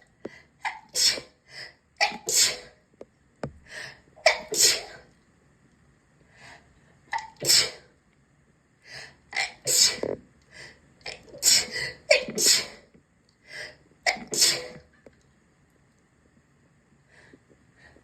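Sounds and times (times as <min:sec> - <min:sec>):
soft breaths: 0:00.0 - 0:00.6, 0:03.4 - 0:04.2, 0:06.2 - 0:07.1, 0:13.4 - 0:13.9, 0:16.9 - 0:18.0
person sneezing: 0:00.9 - 0:01.3, 0:02.0 - 0:02.7, 0:04.3 - 0:05.0, 0:07.2 - 0:07.9, 0:11.4 - 0:12.8, 0:14.1 - 0:14.8.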